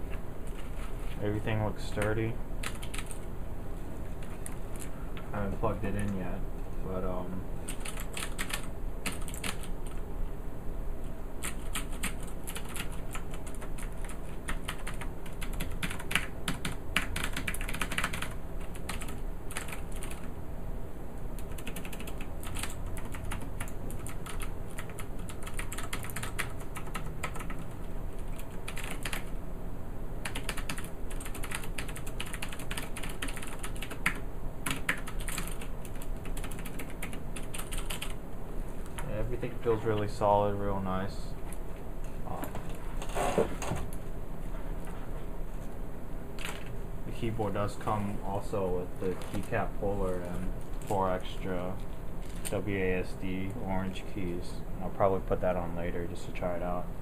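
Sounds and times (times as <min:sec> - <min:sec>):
clicky keyboard typing: 0:02.0 - 0:03.2, 0:07.7 - 0:10.0, 0:11.4 - 0:20.3, 0:21.4 - 0:29.3, 0:30.3 - 0:38.2.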